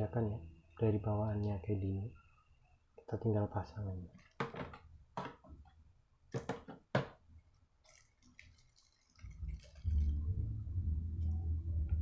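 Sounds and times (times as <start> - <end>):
low steady hum: 9.2 - 12.0.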